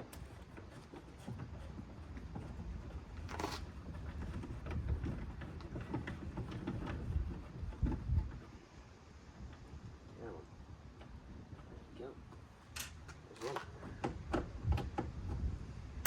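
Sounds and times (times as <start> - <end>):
scraping clicks and knocks: 0.0 - 8.6.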